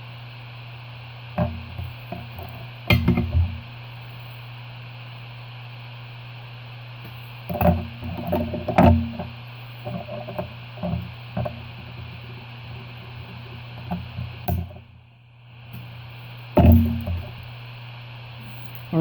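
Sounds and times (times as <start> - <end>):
steady electrical hum: 0.0 - 19.0.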